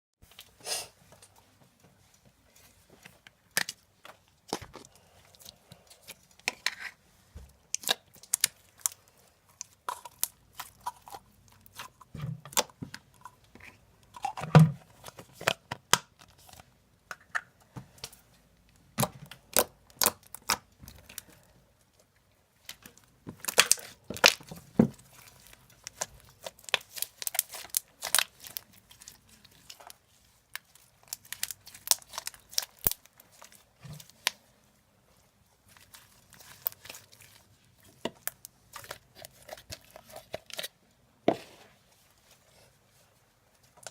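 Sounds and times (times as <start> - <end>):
slime squished by hand: 22.7 - 34.4.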